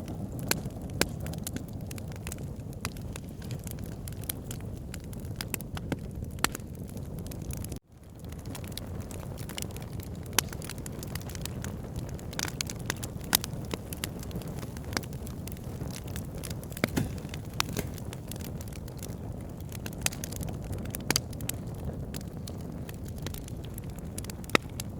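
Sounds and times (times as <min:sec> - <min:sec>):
campfire crackling: 0:00.0 - 0:24.9
sharp pops and snaps: 0:16.7 - 0:18.6.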